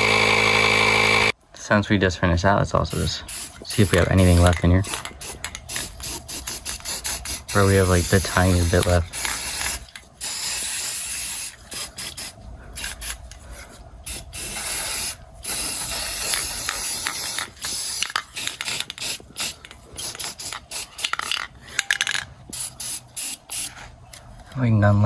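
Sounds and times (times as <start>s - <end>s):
spray paint can hissing: 2.9s - 13.2s, 14.0s - 21.4s, 22.0s - 23.8s.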